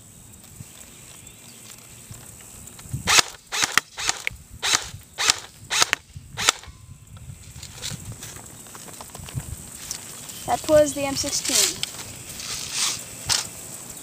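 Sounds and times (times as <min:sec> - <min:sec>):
airsoft rifle shots: 0:03.1 - 0:06.7.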